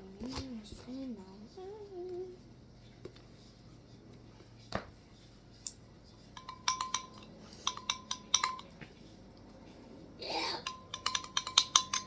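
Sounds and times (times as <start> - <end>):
utensil clinking against dish: 6.3 - 8.9, 10.4 - 12.0.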